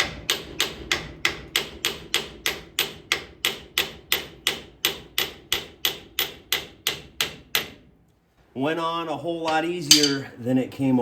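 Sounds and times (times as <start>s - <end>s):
hammer tapping metal: 9.9s - 10.3s.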